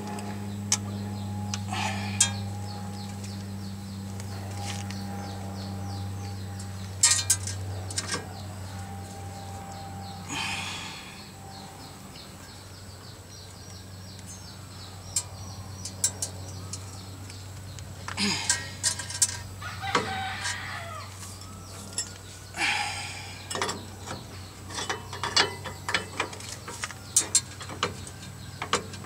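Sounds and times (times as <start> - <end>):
faint bird chirping: 0.0 - 29.0
steady low hum: 0.0 - 29.0
hand tools clinking on metal: 7.0 - 8.2, 18.2 - 20.6, 23.5 - 29.0.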